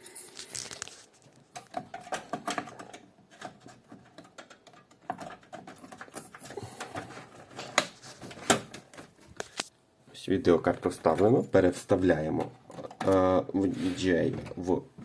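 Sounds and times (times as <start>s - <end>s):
hands working inside computer case: 1.5s - 9.2s.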